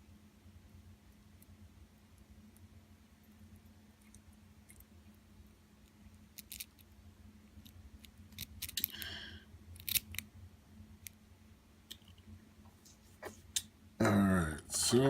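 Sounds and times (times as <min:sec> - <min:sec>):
metallic clicks of lock parts: 0:08.0 - 0:09.0, 0:09.8 - 0:10.2.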